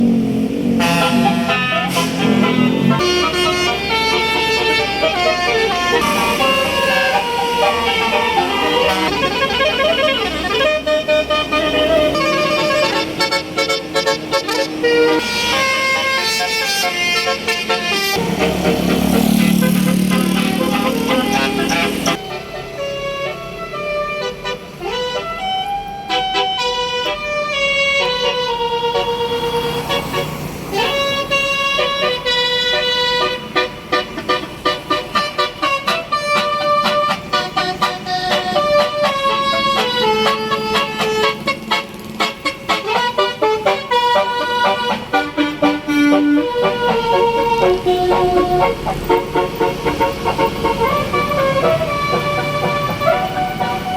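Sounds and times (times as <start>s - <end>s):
bus engine rumbling: 0.0s - 53.9s
multi-note air horn melody: 0.6s - 53.9s.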